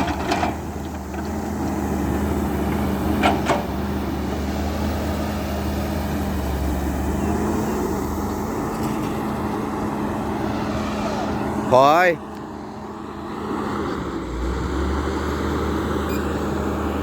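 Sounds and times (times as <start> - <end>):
excavator diesel engine running: 0.0 - 17.0.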